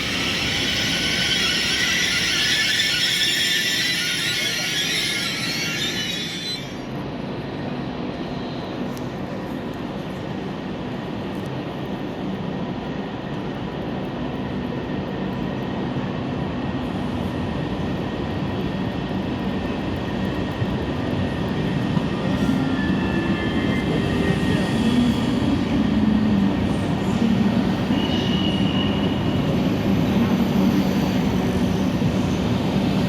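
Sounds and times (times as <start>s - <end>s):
high squealing tones: 0.0s - 6.9s
train rolling rumble: 0.0s - 33.0s.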